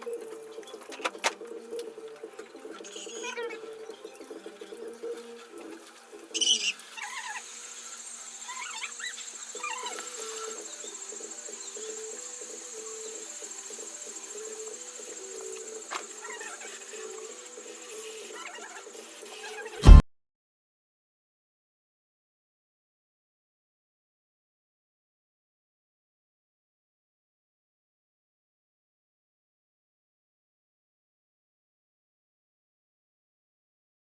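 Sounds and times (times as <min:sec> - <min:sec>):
high-pitched insect buzz: 0:02.6 - 0:19.8.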